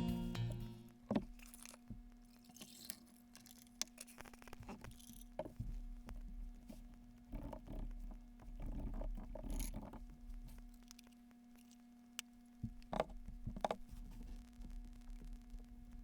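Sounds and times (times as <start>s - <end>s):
low steady hum: 0.0s - 2.3s.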